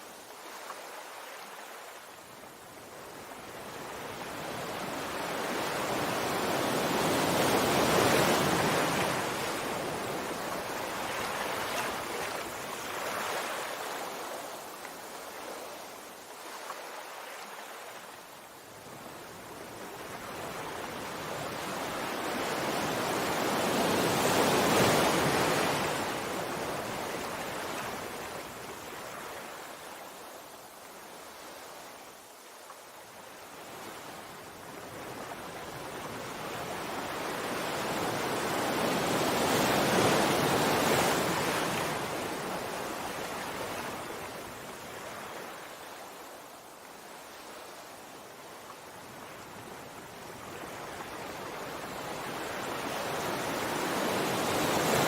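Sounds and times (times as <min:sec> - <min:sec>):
sea waves breaking on shore: 0:00.0 - 0:32.1, 0:33.4 - 0:55.0.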